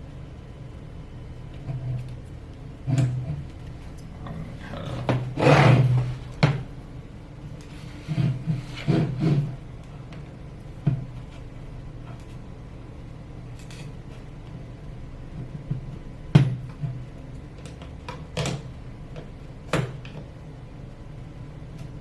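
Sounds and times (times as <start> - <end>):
steady low hum: 0.0 - 22.0.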